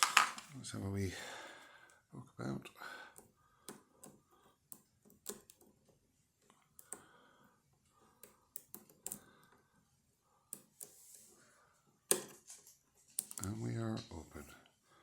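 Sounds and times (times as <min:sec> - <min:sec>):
lock pick clicking and tapping: 0:03.1 - 0:05.8, 0:08.2 - 0:09.3.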